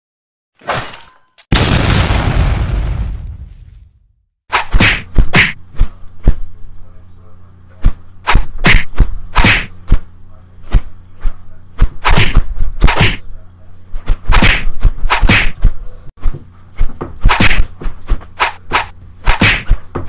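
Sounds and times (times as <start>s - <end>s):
punch and kick impacts: 4.5s - 6.4s, 7.9s - 10.0s, 11.8s - 13.2s, 14.1s - 15.8s, 17.0s - 17.7s, 18.4s - 20.0s.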